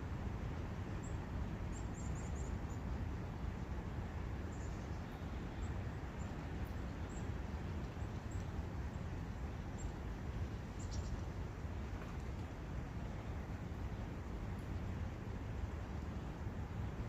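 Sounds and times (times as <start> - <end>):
faint bird chirps: 1.0 - 2.9, 4.5 - 7.4, 10.7 - 11.3.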